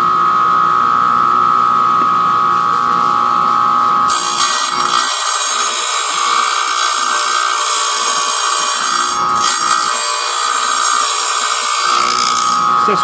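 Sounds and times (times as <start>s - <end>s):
diamond drill cutting glass: 4.1s - 13.0s.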